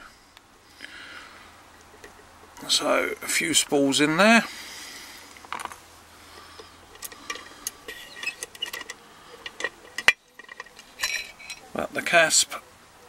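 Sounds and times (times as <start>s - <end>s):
lock picking metallic clicks: 7.0s - 11.6s.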